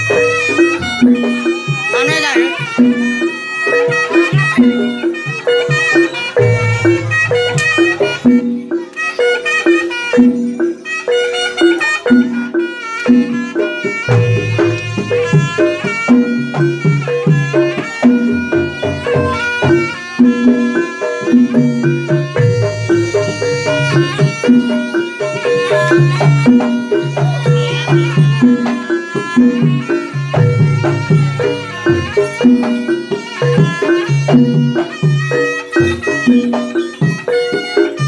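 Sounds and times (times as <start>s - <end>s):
drums: 0.0s - 38.0s
low percussion notes: 0.0s - 38.0s
shrill reed trumpet melody: 0.0s - 38.0s.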